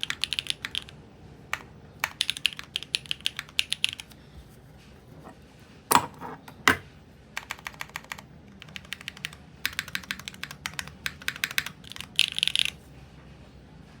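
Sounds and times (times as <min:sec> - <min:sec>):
mechanical keyboard typing: 0:00.0 - 0:04.1, 0:07.4 - 0:12.8.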